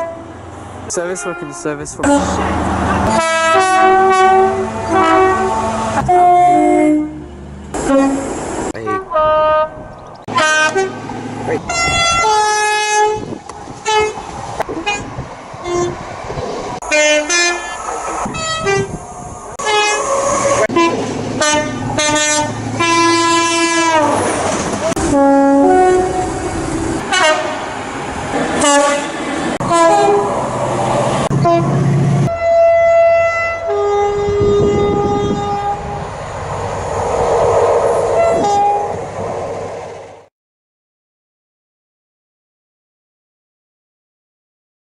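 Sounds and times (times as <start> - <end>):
train horns blasting: 0.0 - 16.0, 16.8 - 27.8, 28.5 - 30.5, 31.2 - 36.2, 38.1 - 39.0.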